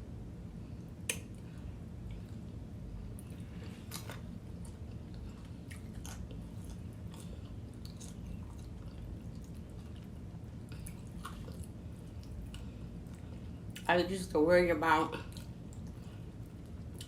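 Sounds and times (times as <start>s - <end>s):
person chewing crunchy food: 3.2s - 13.9s, 15.2s - 17.0s.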